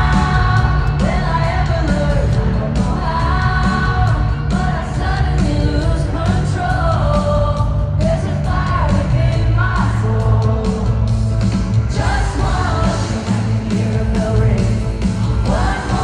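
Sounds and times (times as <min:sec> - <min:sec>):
heavy bass: 0:00.0 - 0:16.0
live pop music with singing: 0:00.0 - 0:16.0.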